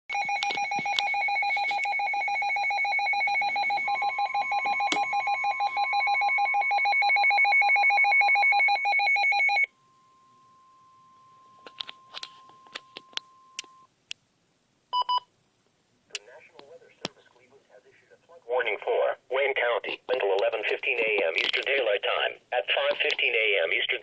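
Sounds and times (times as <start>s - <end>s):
pulsing electronic warble alarm: 0.1s - 13.6s
faint steady alarm tone: 0.1s - 13.9s.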